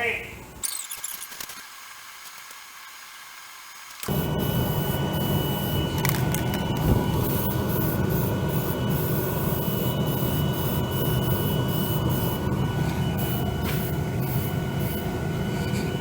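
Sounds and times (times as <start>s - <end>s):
heater droning: 4.0s - 16.0s.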